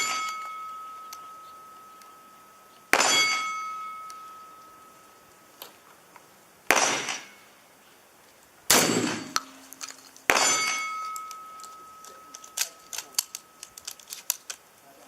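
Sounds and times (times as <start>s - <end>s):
shot striking steel targets: 2.9s - 4.8s, 6.7s - 7.5s, 8.7s - 13.6s
small clicks: 11.1s - 14.6s.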